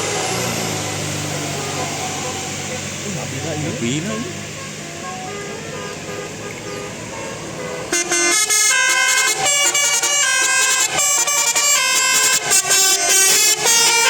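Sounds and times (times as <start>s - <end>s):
bus engine: 0.0s - 14.0s
multi-tone air horn tune: 1.5s - 14.0s.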